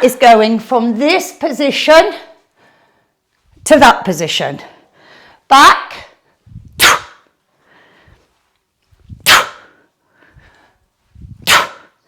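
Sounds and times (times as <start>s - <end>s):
faint breaths in: 2.5s - 3.3s, 4.7s - 5.5s, 7.5s - 8.5s, 9.6s - 11.0s.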